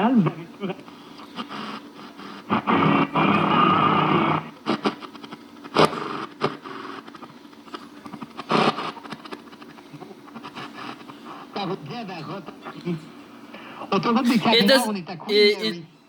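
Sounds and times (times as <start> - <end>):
radio static with crackles: 1.4 - 5.3
radio through small speaker: 14.2 - 15.8.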